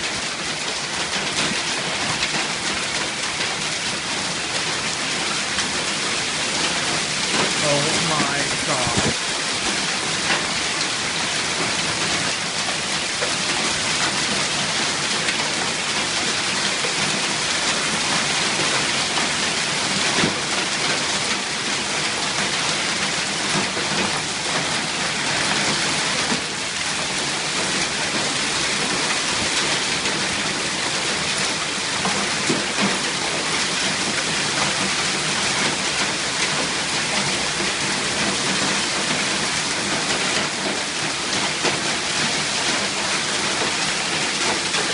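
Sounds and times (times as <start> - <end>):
hail and heavy rain pelting: 0.0 - 44.9.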